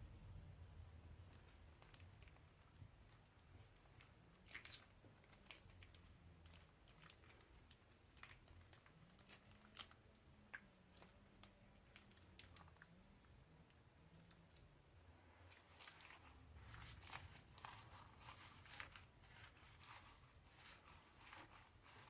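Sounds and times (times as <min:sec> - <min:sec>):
slime crackling and popping: 0:01.3 - 0:13.3.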